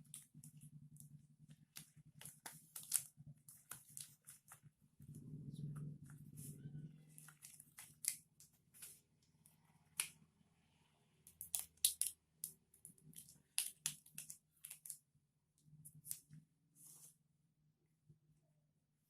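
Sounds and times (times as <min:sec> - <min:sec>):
plastic crinkling: 0:01.5 - 0:04.8, 0:06.3 - 0:09.3, 0:11.3 - 0:15.0.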